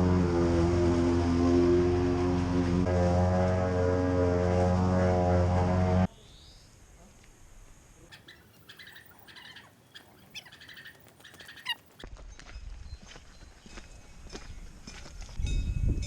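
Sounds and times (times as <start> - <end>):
small birds chirping: 8.1 - 14.6.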